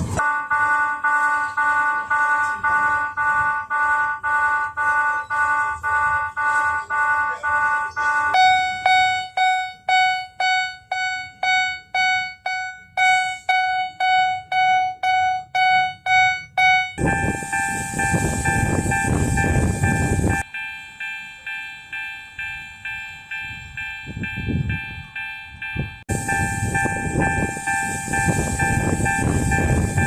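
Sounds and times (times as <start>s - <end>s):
railroad crossing bell dinging: 0.0s - 30.0s.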